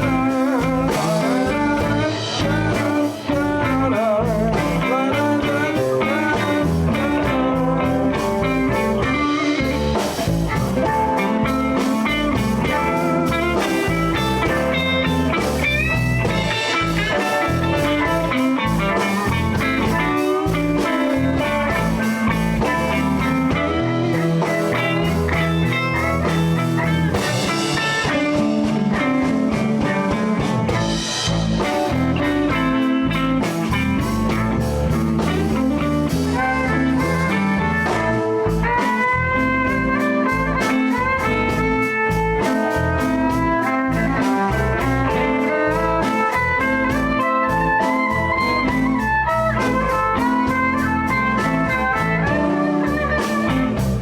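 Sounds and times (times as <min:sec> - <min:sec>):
blues band playing: 0:00.0 - 0:54.0
guitar: 0:00.0 - 0:54.0.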